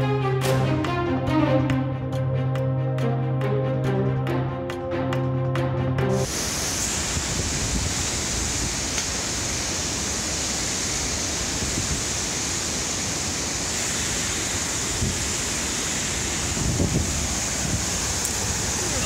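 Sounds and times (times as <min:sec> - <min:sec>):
rushing floodwater with hiss: 0:06.2 - 0:19.0.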